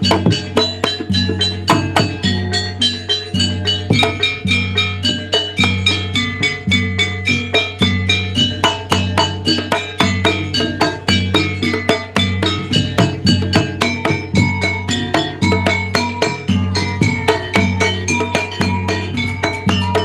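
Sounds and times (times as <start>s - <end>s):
gamelan metallophones and gongs: 0.0s - 20.0s.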